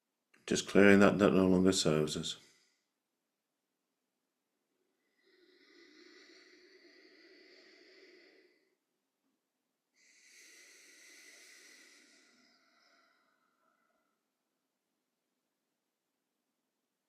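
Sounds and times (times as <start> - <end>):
person breathing deeply: 4.9 - 8.8, 10.0 - 14.3.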